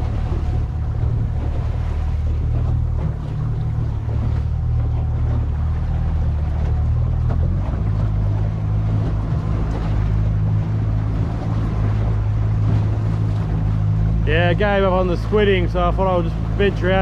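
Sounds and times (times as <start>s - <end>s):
small boat motor running: 0.0s - 17.0s
water noise: 0.0s - 17.0s
wind: 0.0s - 17.0s.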